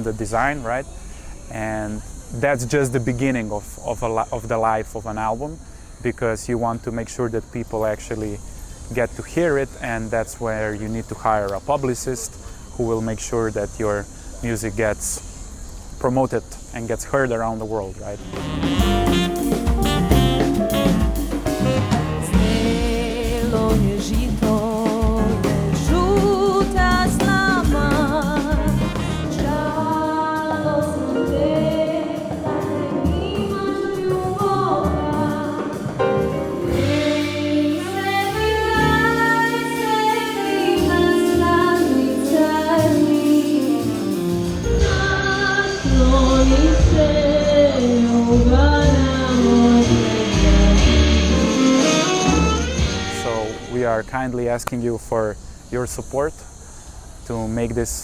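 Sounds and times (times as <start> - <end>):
deep bass: 18.2 - 30.0, 43.8 - 53.6
folk fusion band music: 18.2 - 54.1
person singing: 18.3 - 53.6.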